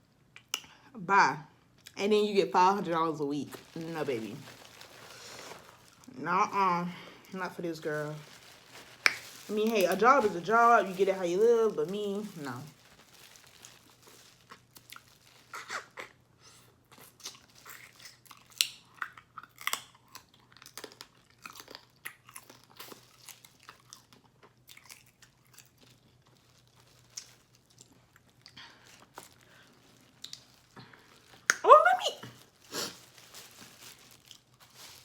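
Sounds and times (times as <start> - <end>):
person chewing crab: 16.9 - 31.5.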